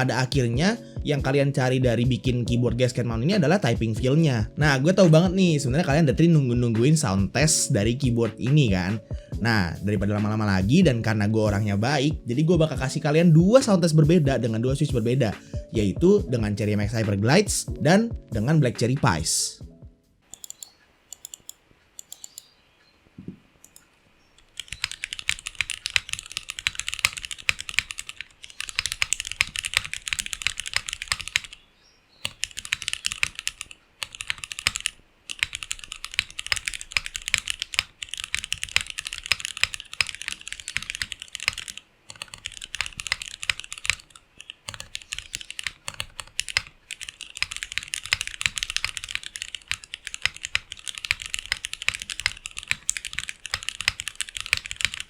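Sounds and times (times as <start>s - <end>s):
typing on mechanical keyboard: 24.4s - 31.6s, 32.2s - 55.0s.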